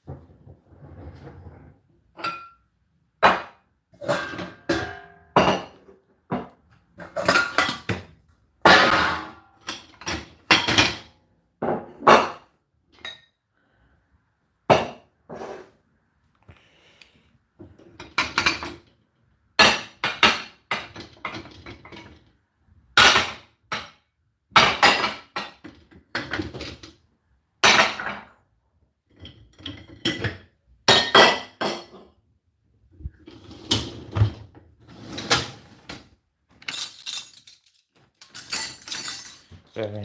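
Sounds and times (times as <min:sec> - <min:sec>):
dishes and cutlery clinking: 0:02.1 - 0:02.7, 0:03.3 - 0:08.1, 0:29.1 - 0:32.1, 0:36.6 - 0:39.7.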